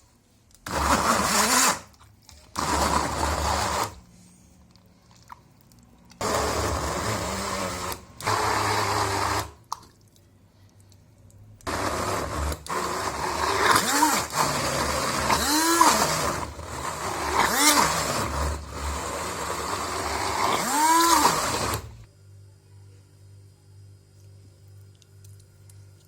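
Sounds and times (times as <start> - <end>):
electric blender running: 0.7 - 1.9, 2.6 - 4.0, 6.2 - 9.6, 11.7 - 22.1.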